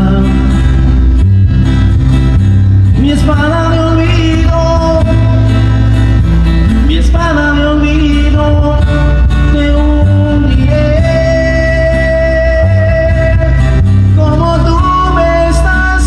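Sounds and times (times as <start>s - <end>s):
music with pulsing bass: 0.0s - 16.0s
person singing: 2.9s - 5.8s, 6.6s - 16.0s.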